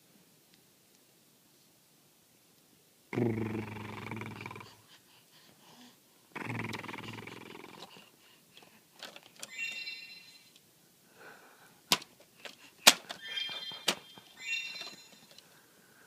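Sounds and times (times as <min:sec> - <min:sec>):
dog groaning: 0:06.4 - 0:08.0.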